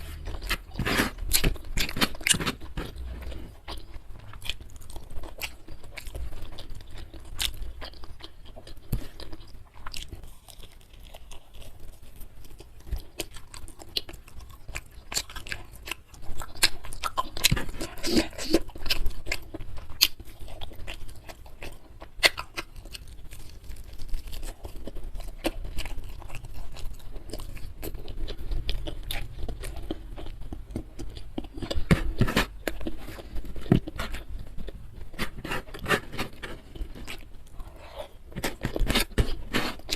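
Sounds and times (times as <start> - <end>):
chewing and crunching food: 0.0 - 39.9.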